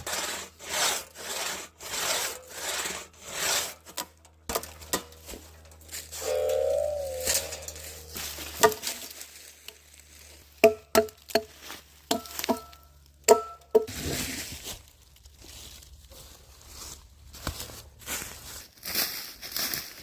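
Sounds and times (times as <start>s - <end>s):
saw blade clanking metallically: 2.0s - 9.1s
rustling: 5.2s - 10.5s.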